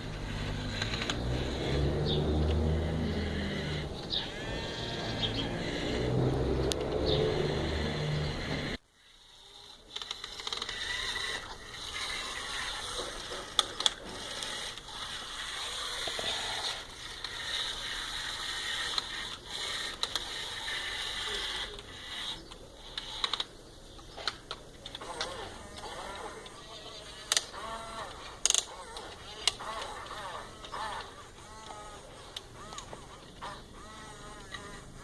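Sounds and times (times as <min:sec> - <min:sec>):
toy excavator motors whining: 0:00.0 - 0:35.0.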